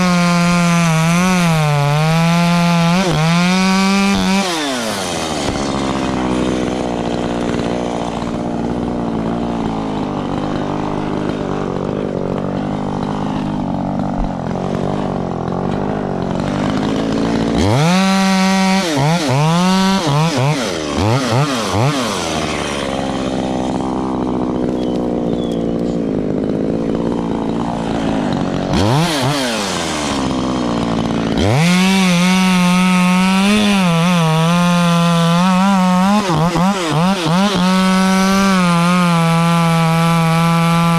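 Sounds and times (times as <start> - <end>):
chainsaw cutting branches: 0.0 - 40.9.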